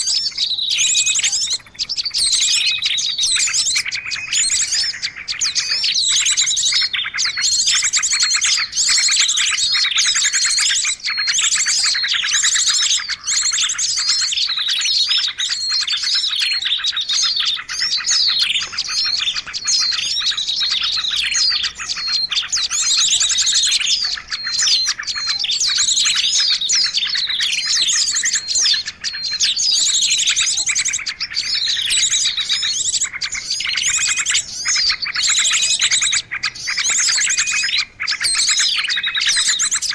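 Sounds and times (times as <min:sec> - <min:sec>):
bird chirping and whistling: 0:00.0 - 0:39.9.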